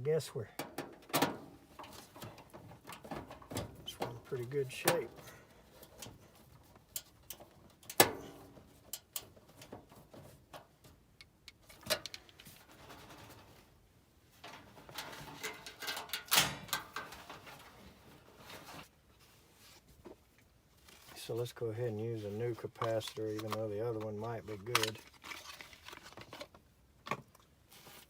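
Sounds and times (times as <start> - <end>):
clicking and rustling of tools: 0.5 - 13.5, 14.4 - 17.8, 22.6 - 27.5.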